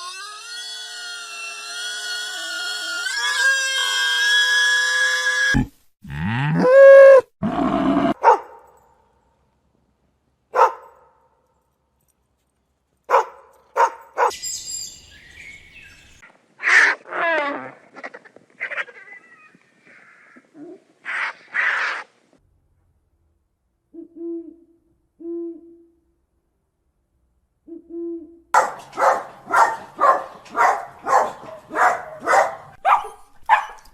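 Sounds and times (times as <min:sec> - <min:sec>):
animal calls: 0:16.6 - 0:22.1, 0:28.6 - 0:33.9.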